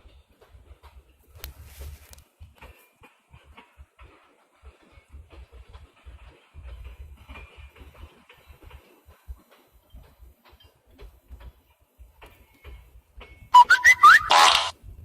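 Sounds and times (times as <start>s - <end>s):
phone text message alert chirp: 13.6s - 14.7s.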